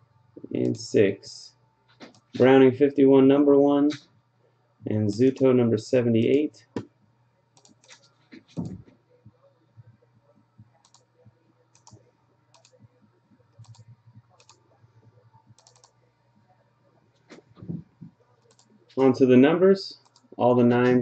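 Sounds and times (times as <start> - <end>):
low steady hum: 0.0 - 21.0
computer keyboard clicks: 7.6 - 8.0, 10.8 - 11.0, 11.8 - 12.0, 12.6 - 12.8, 13.6 - 14.6, 15.5 - 16.0.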